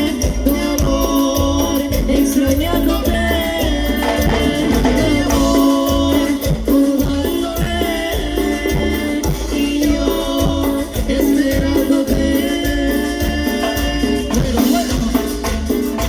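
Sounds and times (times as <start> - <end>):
latin dance band music: 0.0 - 16.0
shaker percussion ticking: 0.0 - 16.0.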